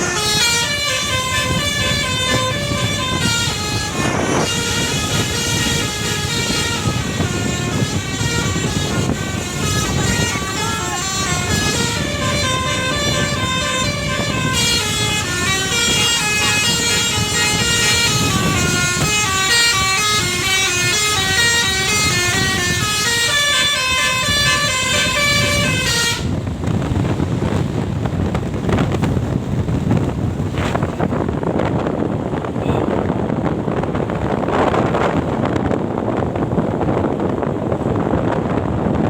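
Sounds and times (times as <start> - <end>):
musical air horn playing a tune: 0.0 - 26.4
steady rumbling noise: 0.0 - 39.0.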